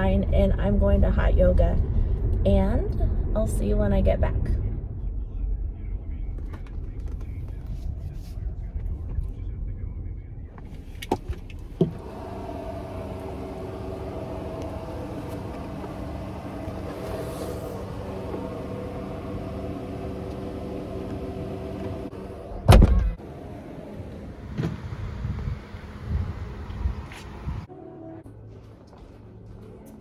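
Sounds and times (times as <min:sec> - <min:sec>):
car engine humming: 0:10.5 - 0:27.7
loud thump: 0:22.6 - 0:23.2.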